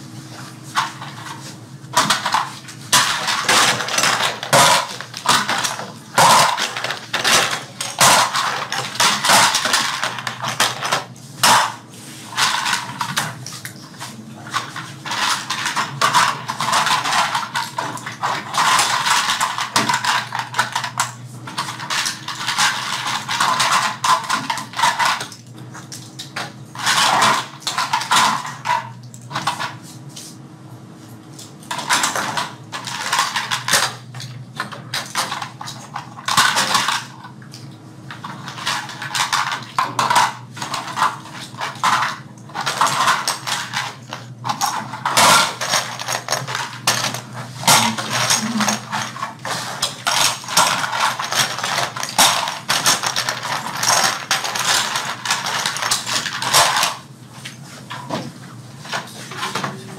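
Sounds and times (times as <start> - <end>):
toy parts clattering and clicking: 2.0 - 13.4, 14.5 - 25.4, 31.7 - 34.0, 34.6 - 37.3, 38.2 - 57.0, 58.8 - 59.9.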